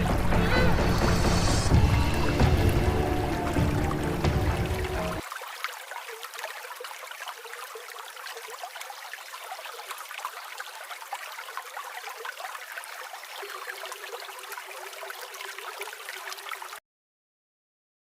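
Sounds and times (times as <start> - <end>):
stream water trickling: 0.0 - 16.8.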